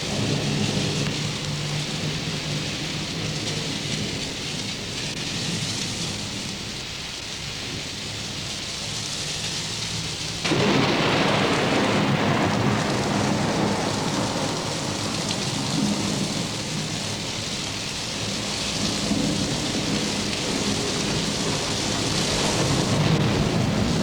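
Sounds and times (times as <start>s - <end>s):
rumbling thunder: 0.0s - 6.9s, 7.6s - 24.0s
steady rain: 0.0s - 24.0s
loud thunder crash: 10.4s - 24.0s.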